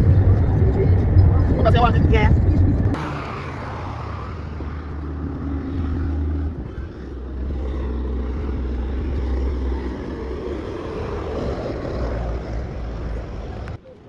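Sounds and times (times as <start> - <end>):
road noise: 0.0 - 14.0
vehicle engine rumble: 0.0 - 14.0.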